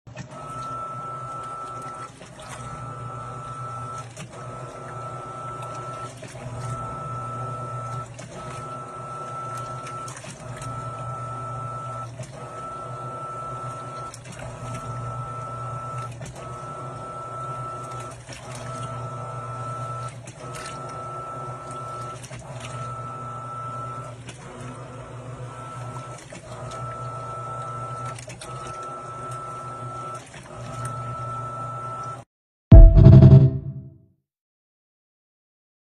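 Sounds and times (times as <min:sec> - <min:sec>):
washing machine motor humming: 0:00.1 - 0:32.2.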